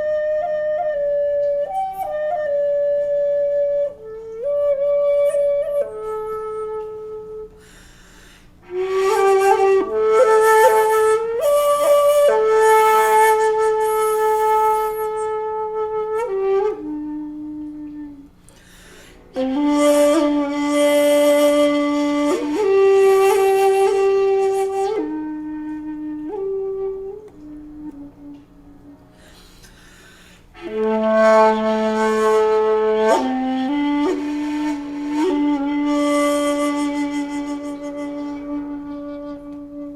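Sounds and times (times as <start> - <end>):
bamboo flute long notes: 0.0 - 39.9
breath noise: 7.5 - 8.6, 18.4 - 19.3, 29.1 - 30.6.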